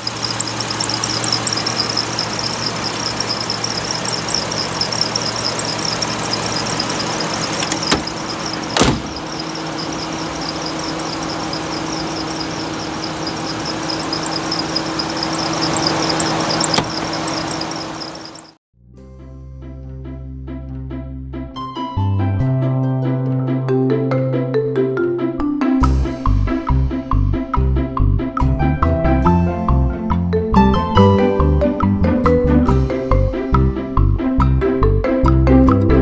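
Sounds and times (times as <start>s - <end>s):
belt chirping squeal: 0.0s - 18.6s
car engine idling: 0.0s - 18.6s.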